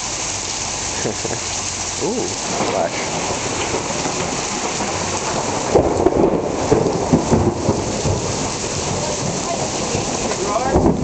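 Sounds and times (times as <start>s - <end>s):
heavy rain pouring: 0.0s - 11.0s
thunder rumbling: 2.3s - 11.0s.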